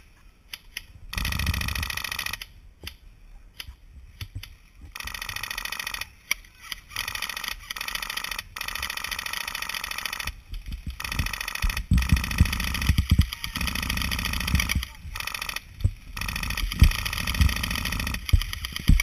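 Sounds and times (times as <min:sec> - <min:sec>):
airsoft guns firing automatic: 0:01.1 - 0:02.4, 0:06.9 - 0:19.0.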